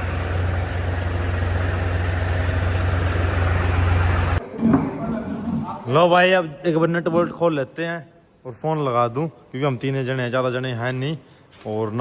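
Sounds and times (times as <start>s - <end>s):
tractor engine running: 0.0s - 4.4s.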